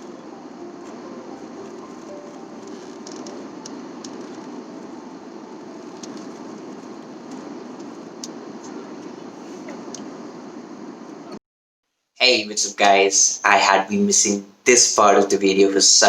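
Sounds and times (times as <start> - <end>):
airliner cabin drone: 0.0 - 11.4.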